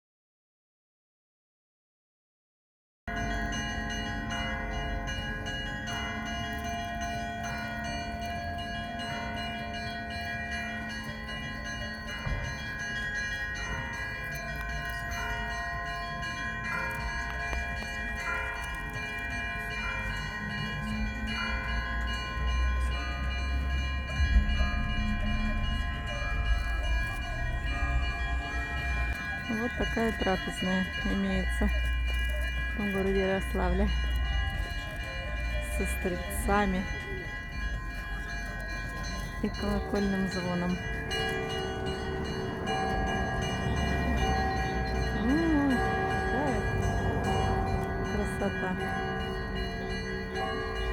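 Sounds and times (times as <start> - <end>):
church bells ringing: 3.1 - 50.9
low rumble: 24.0 - 29.4.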